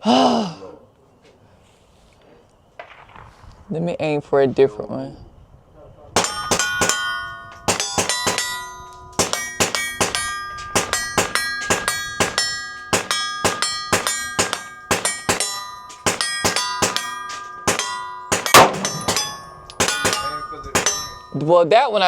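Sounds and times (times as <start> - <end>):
gunshots: 2.8 - 3.4, 9.2 - 10.2, 10.8 - 21.2
steel targets clanging: 6.2 - 21.6.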